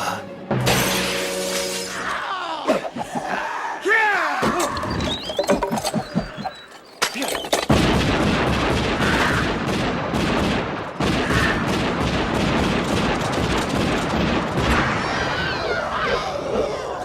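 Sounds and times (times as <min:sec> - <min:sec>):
gunfire: 0:07.7 - 0:15.0.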